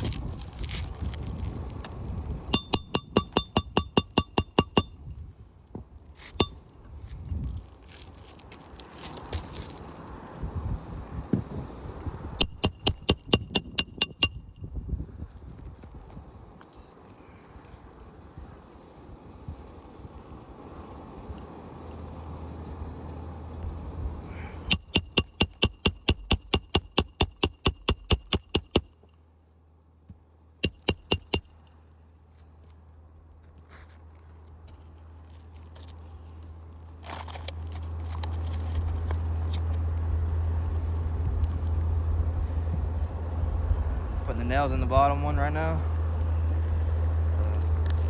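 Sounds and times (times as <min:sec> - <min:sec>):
hammer striking nails: 0:02.6 - 0:05.0, 0:12.4 - 0:14.4, 0:24.7 - 0:28.9, 0:30.6 - 0:31.6.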